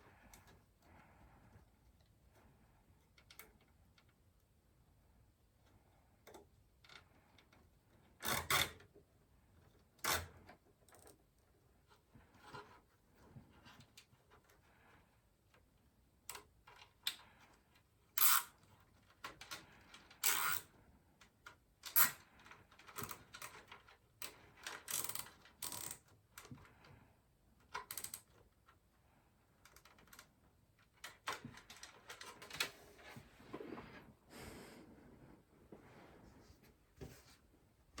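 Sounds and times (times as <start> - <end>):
cables clicking and rustling: 29.6 - 34.1.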